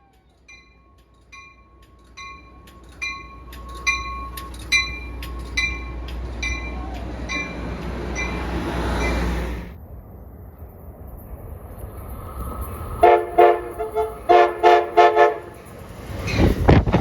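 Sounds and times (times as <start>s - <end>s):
railroad crossing bell dinging: 0.0s - 9.8s, 13.0s - 16.6s
approaching train rumble: 0.0s - 17.0s.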